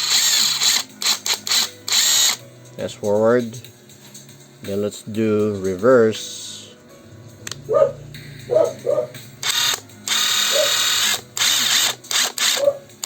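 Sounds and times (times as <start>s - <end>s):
impact driver whirring: 0.0s - 2.4s, 9.4s - 12.8s.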